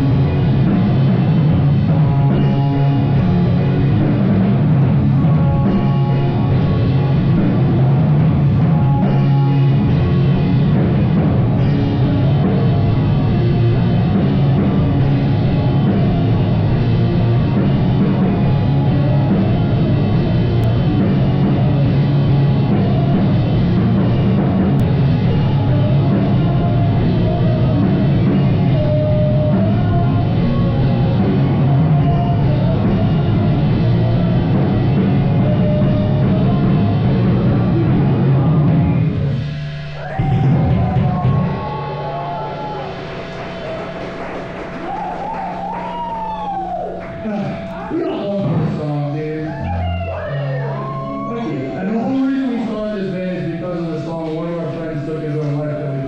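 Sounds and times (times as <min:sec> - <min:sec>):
drum kit: 0:00.0 - 0:56.0
live rock band playing: 0:00.0 - 0:56.0.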